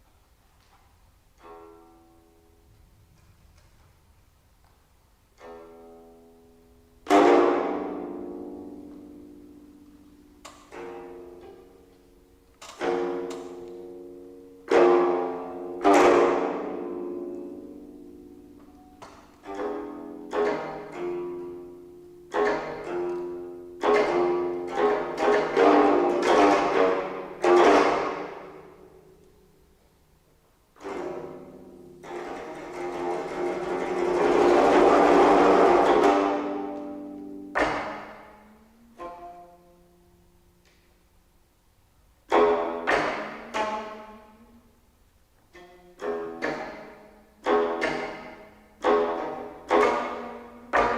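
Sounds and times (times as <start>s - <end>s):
plucked zither notes: 1.4s - 2.7s, 5.3s - 29.8s, 30.8s - 41.1s, 42.2s - 44.8s, 45.5s - 50.9s.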